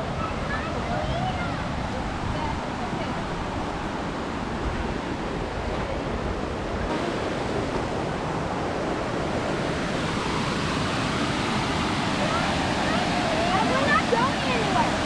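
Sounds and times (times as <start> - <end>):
creek water rushing: 0.0 - 15.0.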